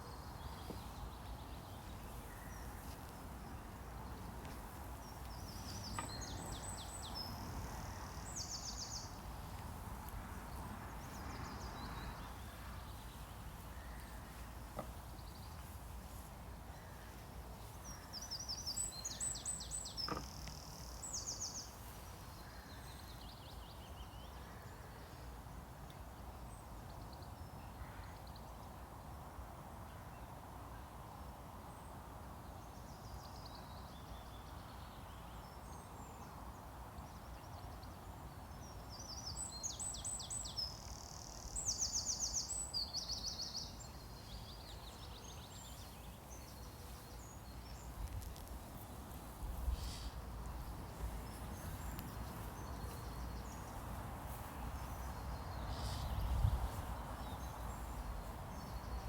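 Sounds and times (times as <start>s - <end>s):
faint background hiss: 0.0s - 59.0s
songbird chirping trills: 38.6s - 59.0s.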